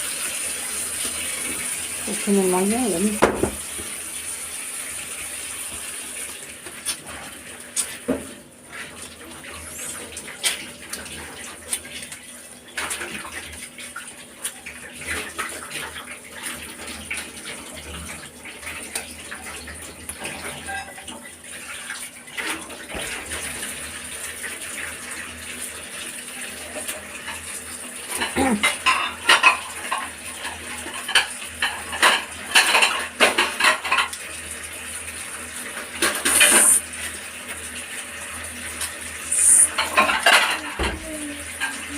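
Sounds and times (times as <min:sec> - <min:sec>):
metal pots and utensils clattering: 0:20.2 - 0:21.2, 0:28.1 - 0:34.2, 0:39.6 - 0:41.9.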